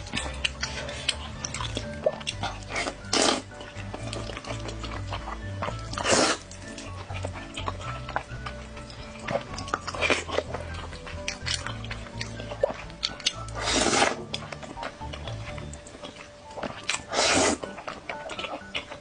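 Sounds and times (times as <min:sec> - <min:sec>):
background music with bass: 0:00.0 - 0:19.0
wet chewing and smacking: 0:00.0 - 0:19.0
noodle slurping: 0:00.4 - 0:08.1, 0:09.6 - 0:14.5, 0:16.8 - 0:19.0.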